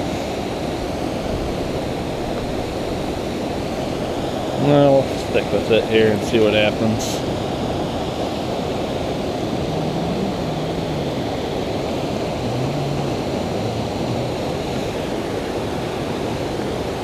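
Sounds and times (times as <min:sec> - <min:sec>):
creek water flowing: 0:00.0 - 0:17.0
wind on microphone: 0:07.0 - 0:17.0.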